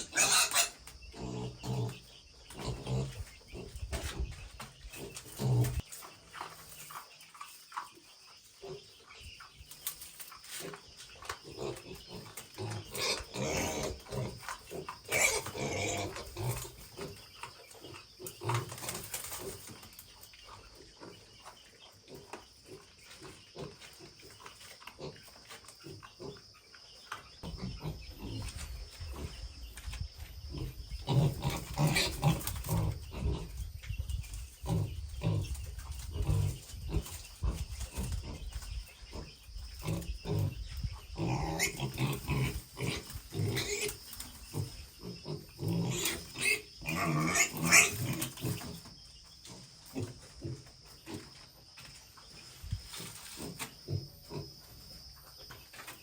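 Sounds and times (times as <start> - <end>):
pigs squealing: 0.0 - 3.8, 11.5 - 17.1, 30.5 - 33.7, 39.1 - 48.9
pigs grunting: 0.0 - 7.1, 10.6 - 21.4, 22.0 - 29.6, 30.4 - 51.5, 53.0 - 54.8.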